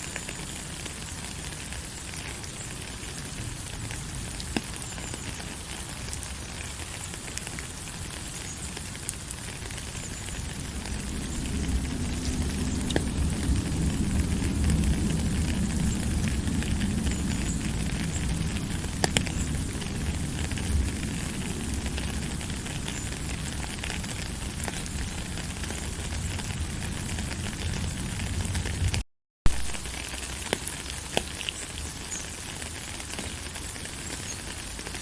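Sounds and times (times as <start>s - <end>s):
steady rain falling: 0.0s - 35.0s
low rumble: 10.1s - 29.0s.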